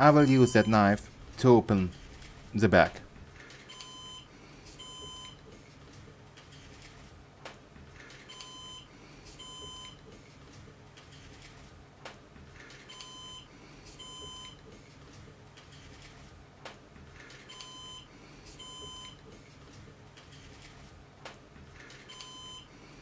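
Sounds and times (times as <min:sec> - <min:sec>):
short high alarm beeps: 0:00.0 - 0:01.0.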